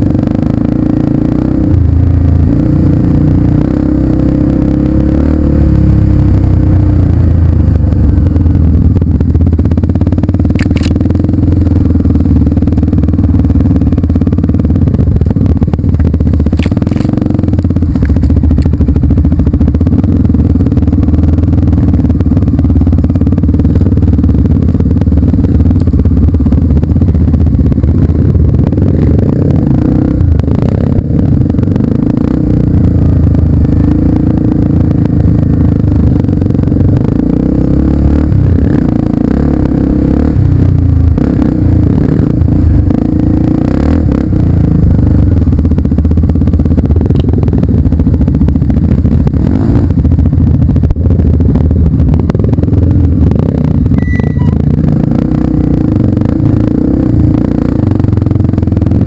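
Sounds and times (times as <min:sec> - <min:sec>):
motorcycle engine running: 0:00.0 - 0:59.0
rattling and clatter: 0:10.5 - 0:11.3, 0:14.8 - 0:20.2.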